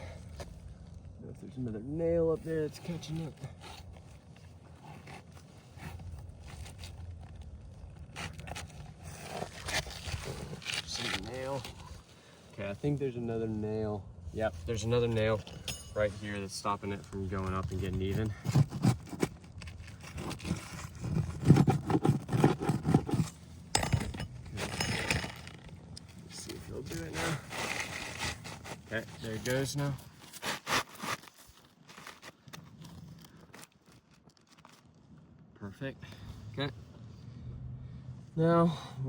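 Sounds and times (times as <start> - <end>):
shingle scraping and rustling: 2.5 - 12.9, 14.6 - 35.0.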